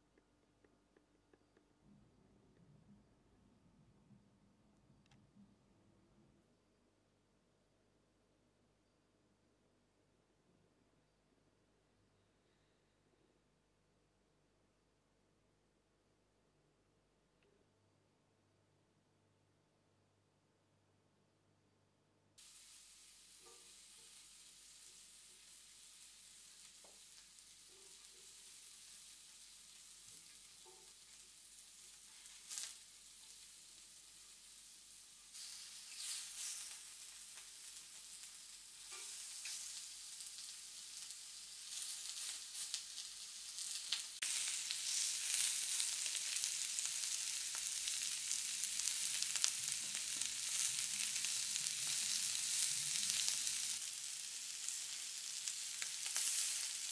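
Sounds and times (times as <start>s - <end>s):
meat sizzling on a grill: 22.4s - 56.9s.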